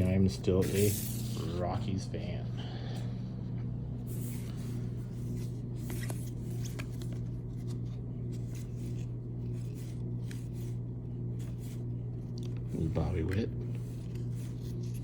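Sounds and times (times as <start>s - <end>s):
steady low hum: 0.0s - 15.0s
cards rustling: 0.5s - 1.6s, 4.1s - 15.0s.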